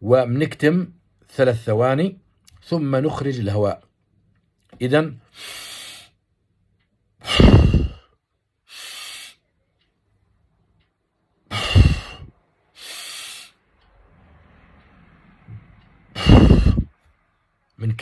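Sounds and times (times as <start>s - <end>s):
breath in through nose: 5.4s - 6.1s, 7.2s - 8.1s, 8.7s - 9.4s, 11.5s - 13.6s, 16.2s - 16.9s
man breathing out hard: 7.2s - 8.1s, 8.7s - 9.4s, 11.5s - 13.6s, 16.2s - 16.9s.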